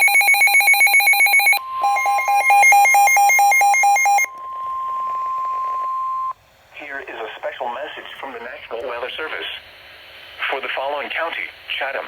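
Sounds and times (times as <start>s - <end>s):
warbling alarm: 0.0s - 6.3s
pulsing electronic alarm beep: 0.0s - 6.4s
steady warning tone: 0.0s - 6.4s.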